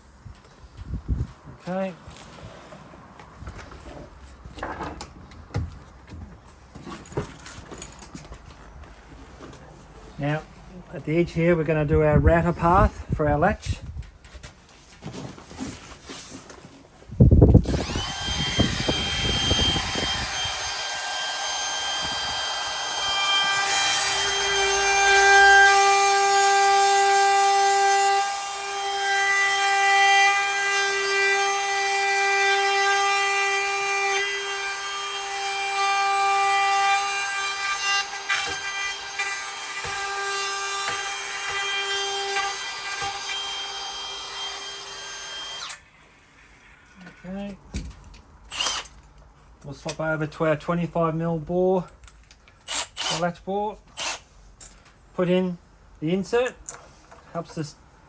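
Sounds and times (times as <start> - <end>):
electric router whining: 17.6 - 47.2.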